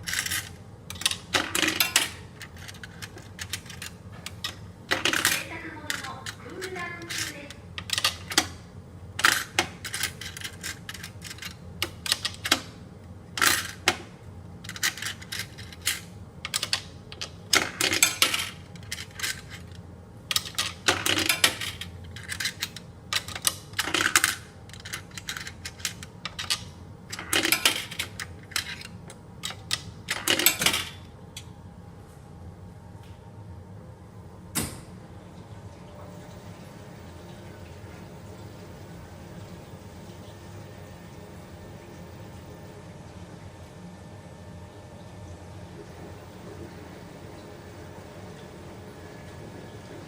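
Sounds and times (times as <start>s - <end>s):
coins clinking into slot: 0.0s - 8.6s, 9.2s - 12.7s, 13.4s - 14.0s, 14.6s - 31.1s
low machine hum: 0.0s - 50.0s.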